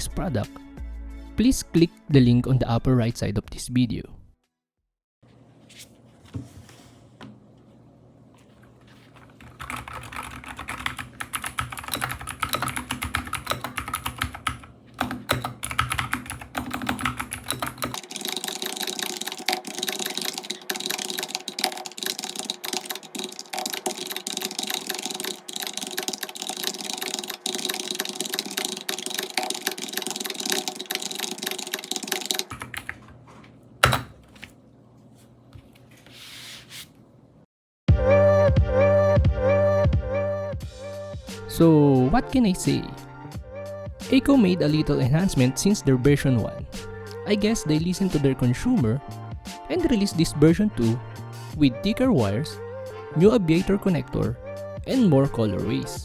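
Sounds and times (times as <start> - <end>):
mechanical keyboard typing: 9.4 - 33.1, 33.8 - 34.2.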